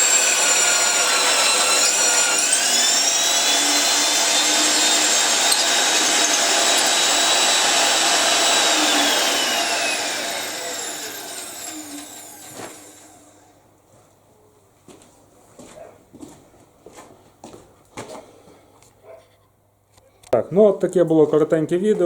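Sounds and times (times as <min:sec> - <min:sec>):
drill motor whining: 0:00.0 - 0:13.5.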